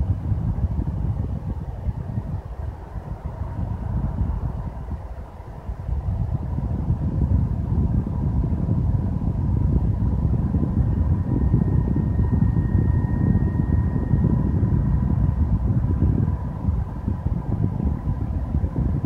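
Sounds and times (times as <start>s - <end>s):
console fan rushing: 0.0s - 19.0s
higher whine: 6.6s - 19.0s
high electronic whine: 10.6s - 16.9s.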